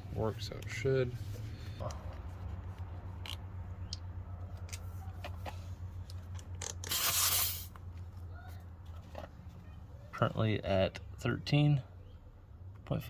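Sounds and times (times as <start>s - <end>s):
air hissing burst: 6.9s - 7.7s.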